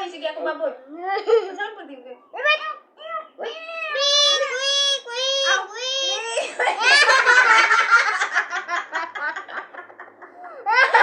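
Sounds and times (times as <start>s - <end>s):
people laughing: 6.3s - 11.0s.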